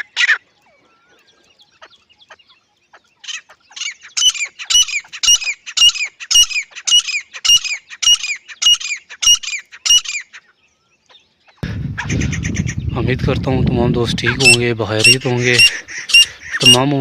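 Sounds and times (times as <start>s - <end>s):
francolin calling: 0.0s - 11.6s, 14.3s - 17.0s.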